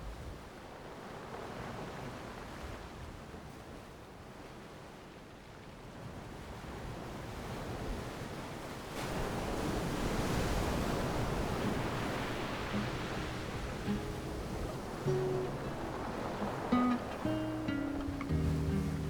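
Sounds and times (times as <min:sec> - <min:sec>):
ocean waves rushing: 0:09.0 - 0:19.0
wave breaking: 0:09.0 - 0:19.0.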